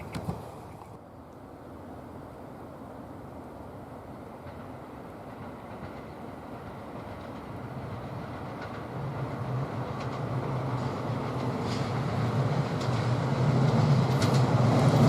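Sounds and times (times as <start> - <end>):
train rail rumble: 1.8 - 15.0.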